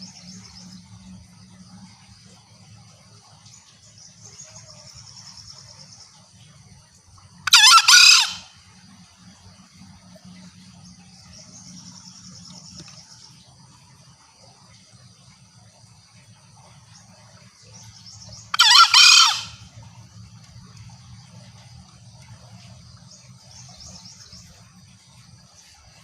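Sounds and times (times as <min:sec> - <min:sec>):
junglefowl call: 0:07.5 - 0:08.6, 0:18.5 - 0:19.8.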